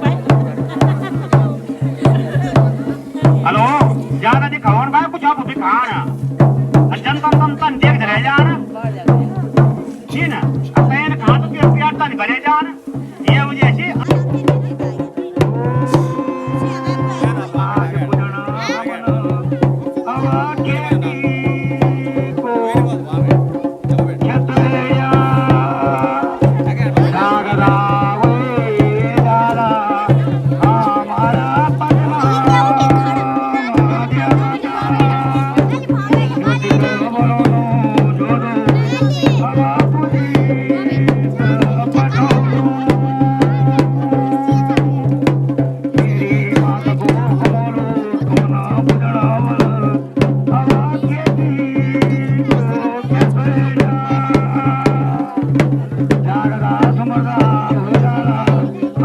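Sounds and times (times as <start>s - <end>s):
drums beaten rhythmically: 0.0s - 59.0s
wavering folk melody: 12.8s - 45.2s.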